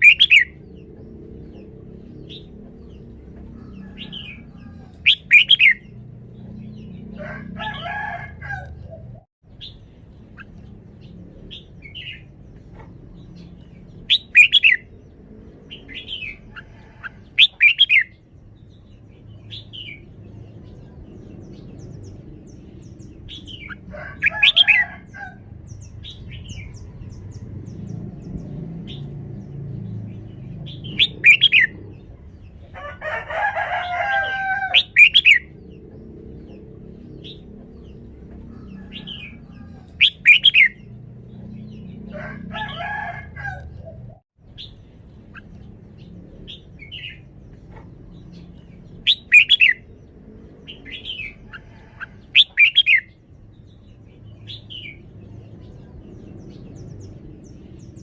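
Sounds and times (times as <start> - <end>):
bulbul singing whistled phrases: 0.0 - 0.6, 5.1 - 6.0, 14.1 - 14.9.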